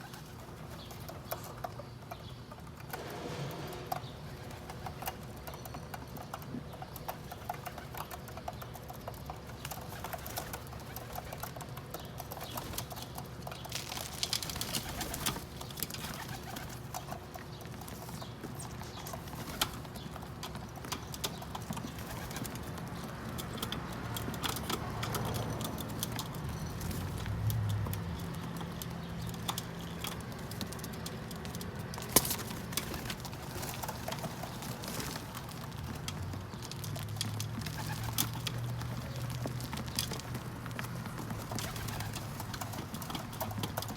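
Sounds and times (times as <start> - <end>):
pigeons pecking seeds: 0.0 - 43.9
pigeons cooing: 14.6 - 27.4, 32.1 - 43.9.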